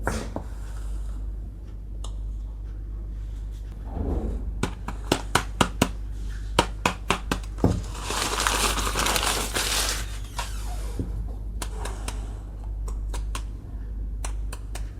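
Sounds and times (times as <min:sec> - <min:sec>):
plastic packaging crinkling: 0:07.5 - 0:10.5.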